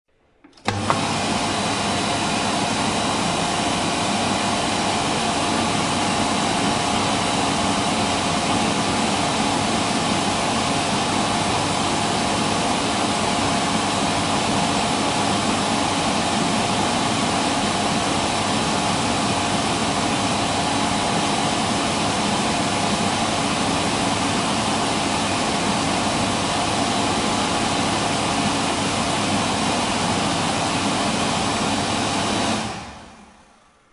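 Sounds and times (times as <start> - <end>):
electric hand dryer blowing: 0.4 - 33.9.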